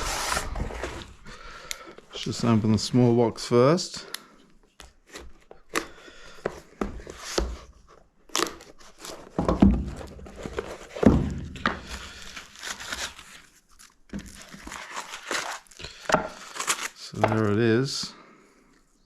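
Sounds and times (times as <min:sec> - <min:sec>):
packaging crinkling and tearing: 0:11.8 - 0:17.6.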